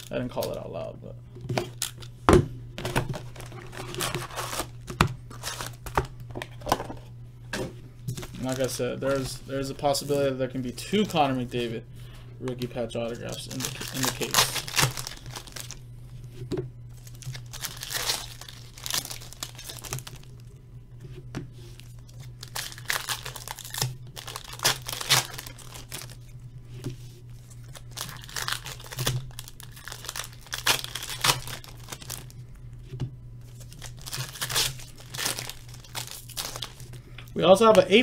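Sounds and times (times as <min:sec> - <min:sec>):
low electrical hum: 0:00.0 - 0:38.0
plastic wrapping crinkling and tearing: 0:03.0 - 0:06.0, 0:08.2 - 0:11.7, 0:12.5 - 0:15.8, 0:16.9 - 0:20.5, 0:21.8 - 0:26.3, 0:27.4 - 0:32.4, 0:33.4 - 0:37.0.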